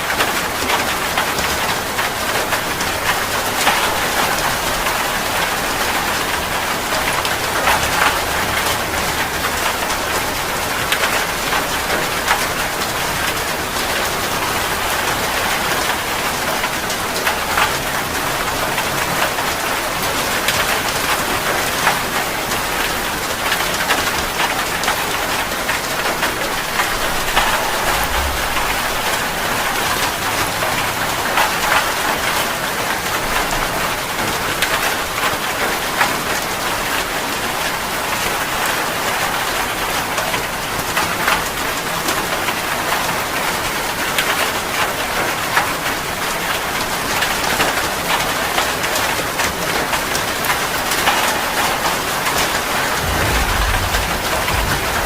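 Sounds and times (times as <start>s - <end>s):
heavy rain splashing: 0.0s - 55.0s.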